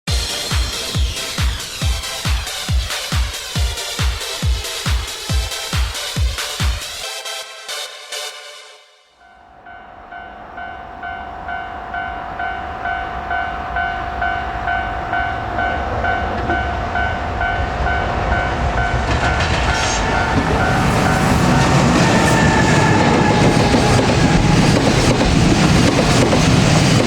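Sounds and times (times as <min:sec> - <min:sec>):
freight train rumble: 0:00.1 - 0:07.0, 0:09.3 - 0:27.0
train wheel clatter: 0:12.8 - 0:27.0.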